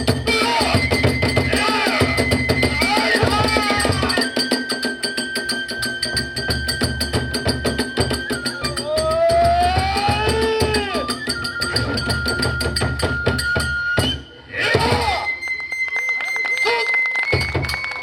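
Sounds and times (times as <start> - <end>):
large drum beat: 0.0 - 5.1, 6.1 - 13.7, 14.7 - 15.2
bamboo flute long high notes: 0.0 - 18.0.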